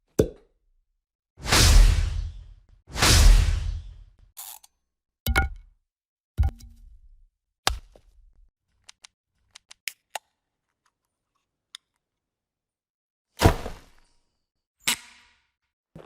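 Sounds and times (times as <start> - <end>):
sharp transition hits: 1.4 - 4.0.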